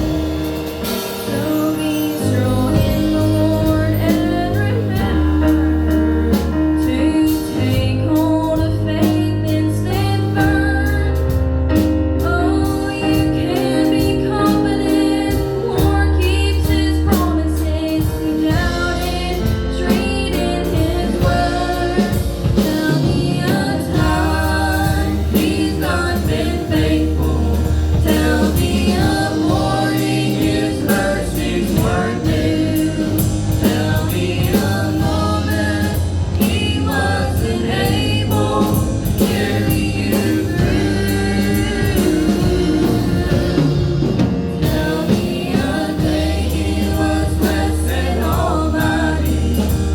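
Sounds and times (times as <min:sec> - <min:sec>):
bass line of held notes: 0:00.0 - 0:49.9
instrumental backing: 0:00.0 - 0:49.9
vocal group singing: 0:00.0 - 0:49.9.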